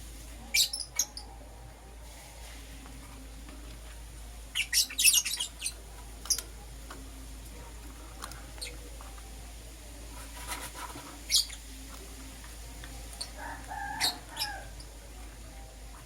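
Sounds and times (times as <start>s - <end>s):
lovebirds chirping: 0.4s - 1.5s, 4.2s - 9.4s, 11.2s - 15.8s.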